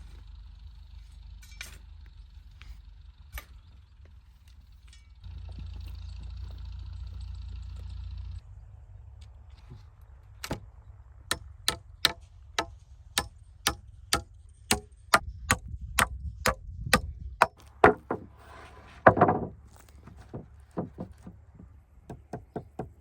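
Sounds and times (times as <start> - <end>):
sharp knocks: 11.3 - 18.3, 19.0 - 23.0
rough scraping: 16.9 - 22.6.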